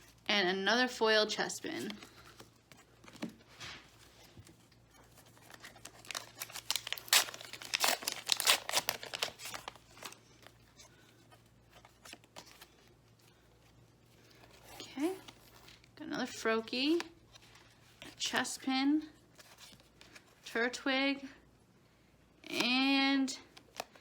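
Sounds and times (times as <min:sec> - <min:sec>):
wrapper tearing and crinkling: 0:05.2 - 0:10.5.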